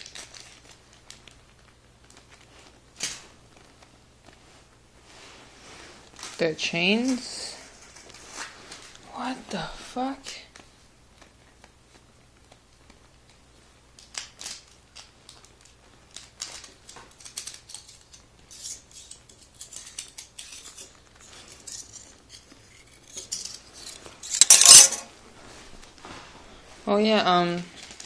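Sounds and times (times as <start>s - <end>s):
metal dog tags clinking: 24.2s - 25.1s.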